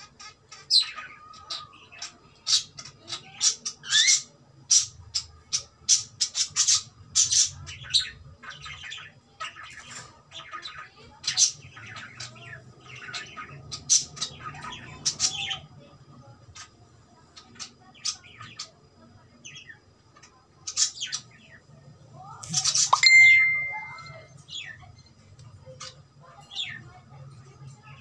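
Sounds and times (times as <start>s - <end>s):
cockatiel chirping: 22.9s - 24.3s.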